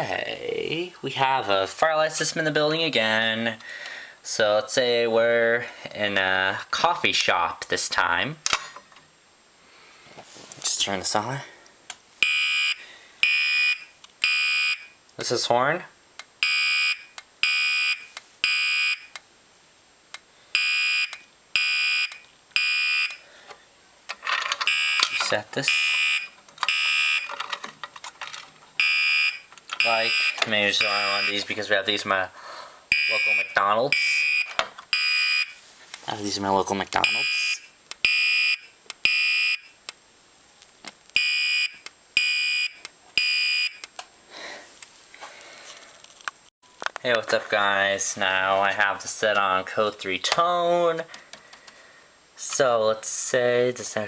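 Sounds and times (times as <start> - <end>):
fire alarm horn blasts: 12.2 - 14.9, 16.4 - 19.1, 20.6 - 23.2, 25.7 - 27.2, 28.8 - 31.4, 32.9 - 35.6, 37.0 - 39.7.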